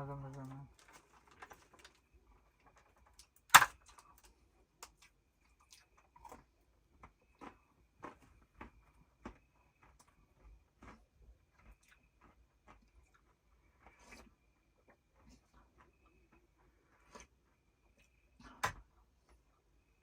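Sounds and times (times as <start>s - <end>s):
crunchy food being chewed: 0.4s - 20.0s.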